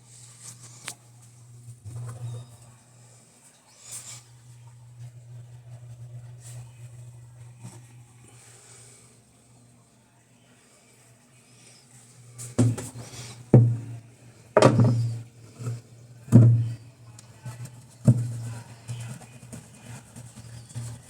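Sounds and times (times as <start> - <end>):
low steady hum: 0.0 - 21.0
plastic parts knocking: 12.6 - 14.0, 14.6 - 16.8.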